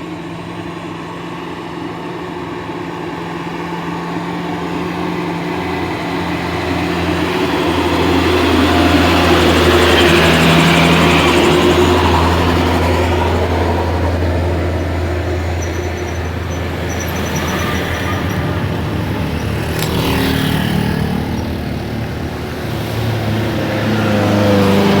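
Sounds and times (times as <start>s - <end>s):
heavy vehicle engines passing: 0.0s - 25.0s.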